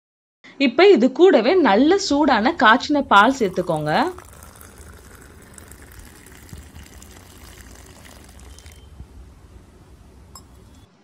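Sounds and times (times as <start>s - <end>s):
milk pouring into a glass: 2.6s - 10.9s.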